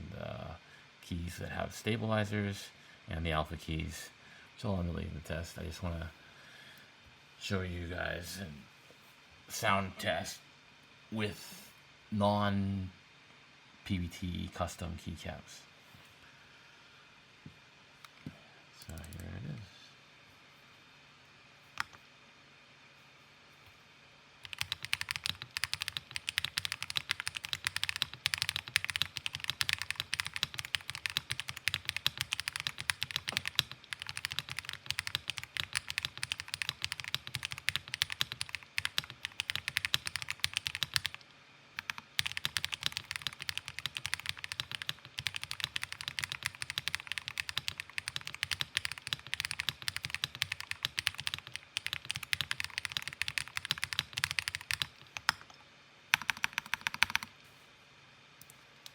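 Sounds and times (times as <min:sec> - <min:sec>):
keyboard typing: 0:24.4 - 0:41.2, 0:41.8 - 0:55.5, 0:56.1 - 0:57.3.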